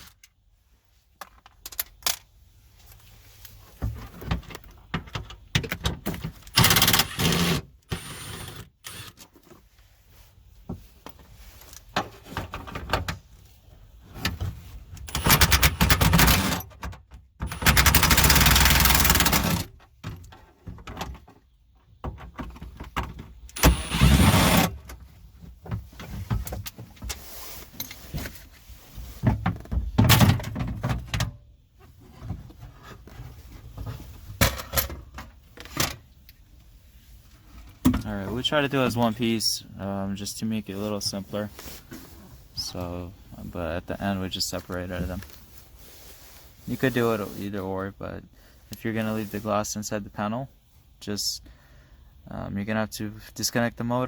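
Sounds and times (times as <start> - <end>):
car window parts clunking and scraping: 3.5 - 9.7, 10.6 - 36.1.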